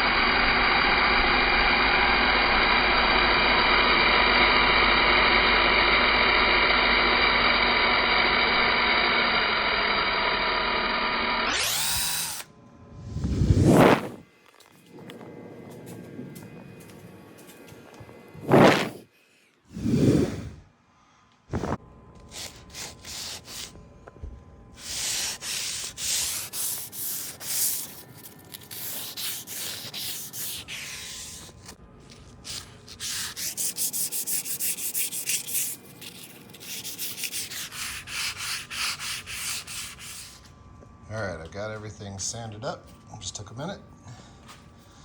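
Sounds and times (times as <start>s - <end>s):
sandpaper rubbing on wood: 22.3s - 23.7s, 24.8s - 31.8s, 32.5s - 40.5s.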